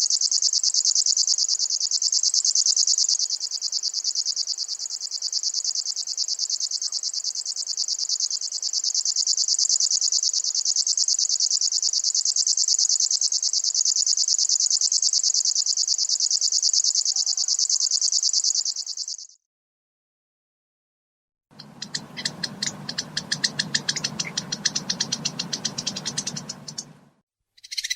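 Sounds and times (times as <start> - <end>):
warbler reeling trill: 21.6 - 27.9.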